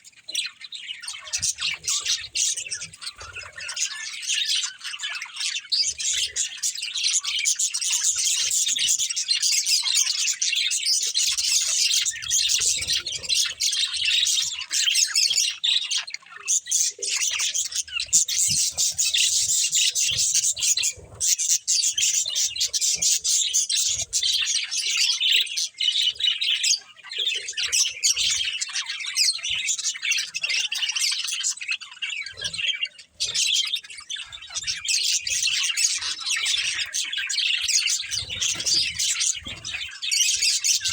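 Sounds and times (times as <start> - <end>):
budgerigars chirping: 0.0 - 40.9.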